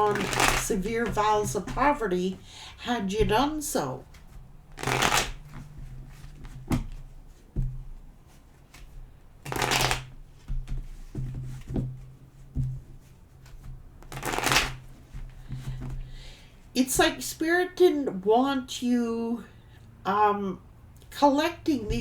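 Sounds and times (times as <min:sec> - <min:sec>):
cards being riffle shuffled: 0:00.0 - 0:02.4, 0:03.2 - 0:16.3.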